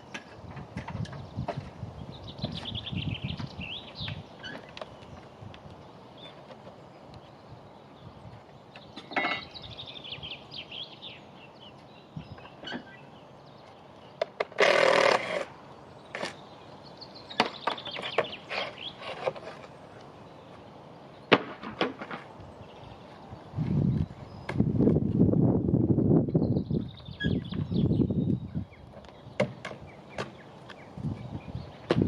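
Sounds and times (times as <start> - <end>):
faint bird chirps: 26.4 - 29.3.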